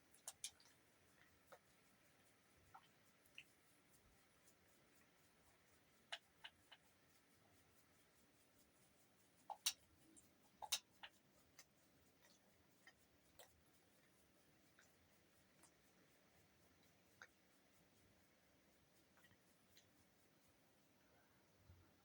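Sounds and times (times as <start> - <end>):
sharp ticks: 9.4 - 13.6.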